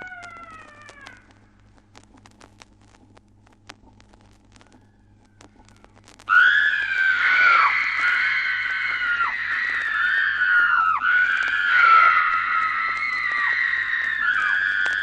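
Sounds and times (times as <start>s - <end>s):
loud high-pitched scream: 0.0s - 1.3s, 6.3s - 15.0s
faint record crackle: 0.0s - 15.0s
steady low hum: 0.0s - 15.0s.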